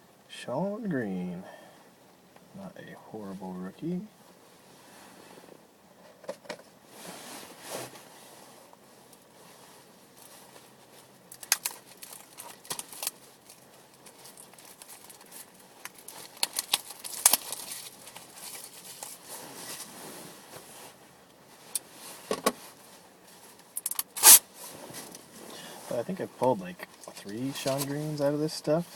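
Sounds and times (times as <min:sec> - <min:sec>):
cards and packaging handled: 0:11.3 - 0:19.2.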